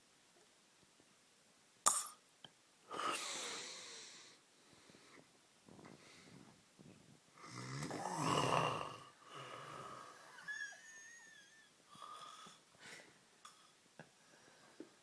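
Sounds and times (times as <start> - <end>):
man snoring: 7.4 - 10.8.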